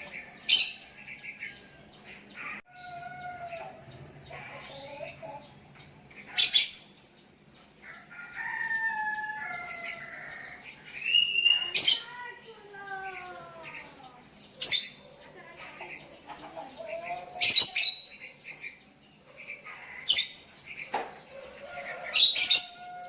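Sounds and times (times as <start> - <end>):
birds chirping and whistling: 0.0 - 23.0
rooster crowing: 7.8 - 10.6, 21.3 - 23.0.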